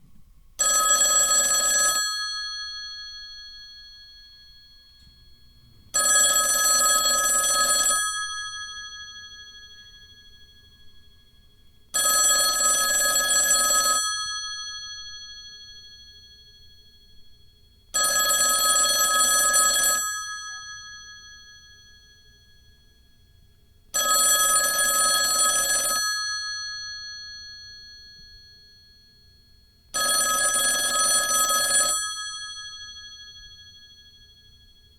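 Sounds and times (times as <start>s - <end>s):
telephone ringing: 0.6s - 4.6s, 5.8s - 10.3s, 11.9s - 15.2s, 18.0s - 21.7s, 24.0s - 27.8s, 29.9s - 33.6s.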